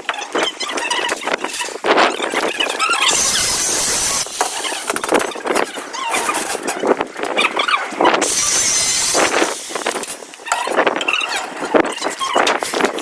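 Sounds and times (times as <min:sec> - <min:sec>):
birds chirping and calling: 0:00.3 - 0:12.5
bursts of hissy noise: 0:03.1 - 0:05.2, 0:08.2 - 0:10.4.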